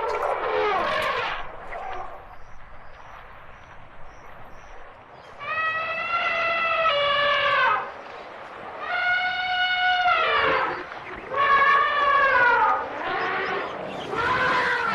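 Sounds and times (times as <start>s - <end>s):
elephant trumpeting: 8.8s - 14.9s.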